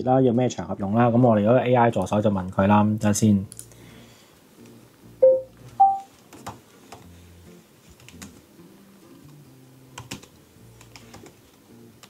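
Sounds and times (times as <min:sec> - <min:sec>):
soft background music: 0:00.2 - 0:12.0
short tones: 0:05.2 - 0:06.0
computer keyboard typing: 0:10.0 - 0:10.3.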